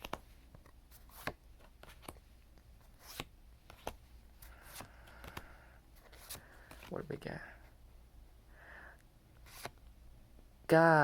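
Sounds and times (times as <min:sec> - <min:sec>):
trading cards swiping and clicking: 0:00.0 - 0:06.9, 0:09.4 - 0:09.9.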